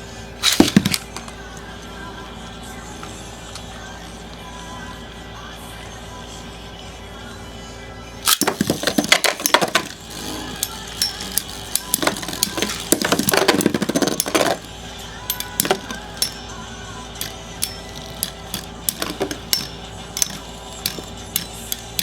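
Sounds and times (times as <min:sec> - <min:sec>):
spinning tops clashing: 0:00.4 - 0:01.5, 0:08.3 - 0:16.6, 0:17.2 - 0:22.0.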